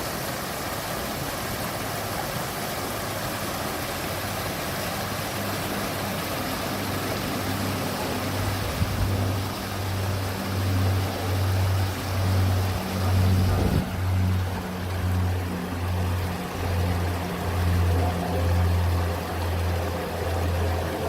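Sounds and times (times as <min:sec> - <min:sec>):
water running and splashing: 0:00.0 - 0:21.0
low pulsing hum: 0:05.2 - 0:21.0.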